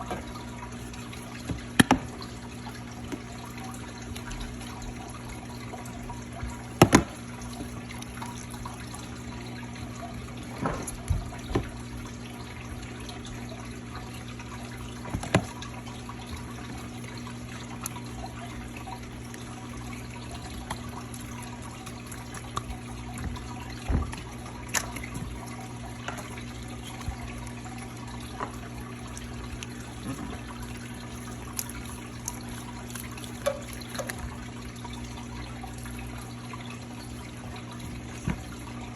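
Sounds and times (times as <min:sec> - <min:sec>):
slime squelching: 0:17.8 - 0:35.9.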